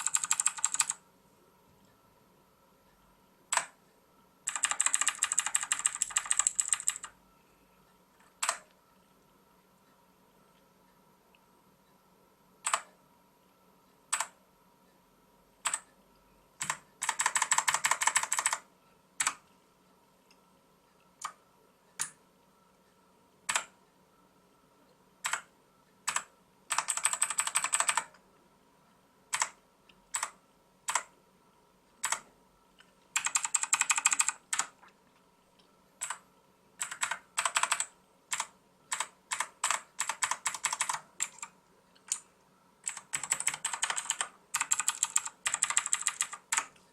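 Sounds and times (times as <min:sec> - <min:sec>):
mechanical keyboard clicking: 0:00.0 - 0:01.0, 0:04.5 - 0:07.2, 0:08.2 - 0:08.7, 0:12.6 - 0:13.0, 0:15.6 - 0:15.9, 0:16.6 - 0:19.4, 0:23.5 - 0:23.8, 0:25.2 - 0:25.5, 0:26.1 - 0:28.2, 0:29.3 - 0:31.1, 0:32.0 - 0:32.3, 0:33.2 - 0:34.8, 0:36.8 - 0:46.8.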